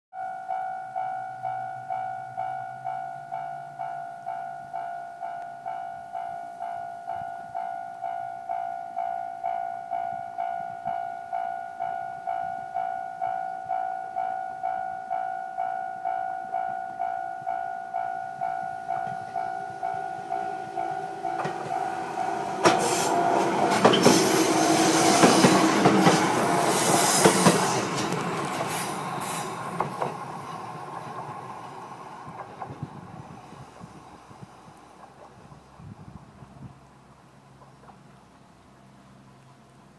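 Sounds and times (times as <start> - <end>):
level crossing warning bell: 0.1 - 26.7
train wheels clicking on rail joints: 16.6 - 35.5.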